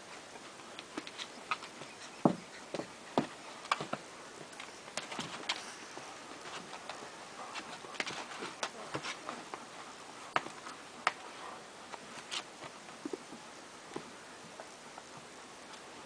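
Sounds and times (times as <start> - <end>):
puppies clicking and tapping: 0.7 - 9.6.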